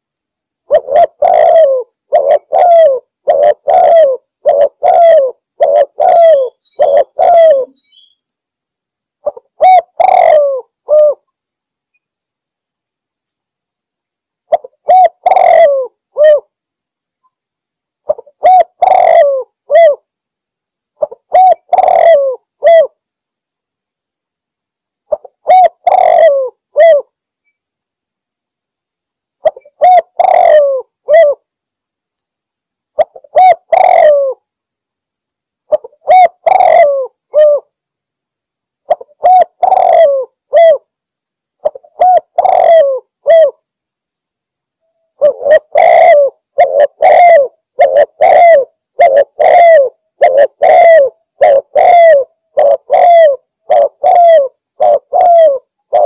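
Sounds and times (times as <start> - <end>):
dove cooing: 0.7 - 8.1, 9.2 - 11.2, 14.5 - 16.5, 18.1 - 20.0, 21.0 - 23.0, 25.1 - 27.1, 29.4 - 31.4, 33.0 - 34.4, 35.7 - 37.7, 38.9 - 40.9, 41.6 - 43.6, 45.2 - 56.0.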